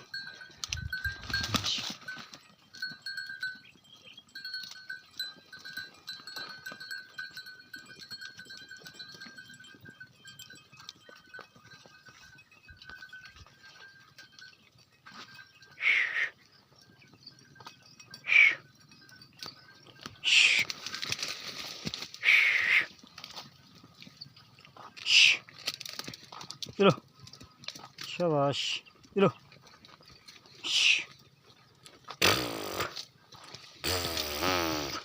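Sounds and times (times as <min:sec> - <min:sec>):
goat or sheep bleat: 0:22.2 - 0:23.0, 0:32.1 - 0:33.1, 0:33.8 - 0:35.0.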